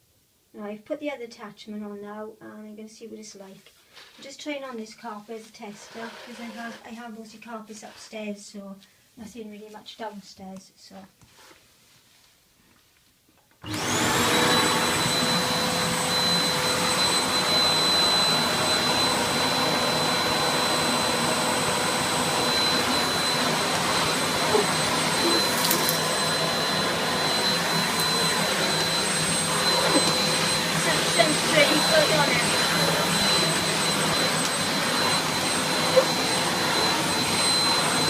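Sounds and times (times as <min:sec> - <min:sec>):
vacuum cleaner motor whining: 0:13.6 - 0:38.0.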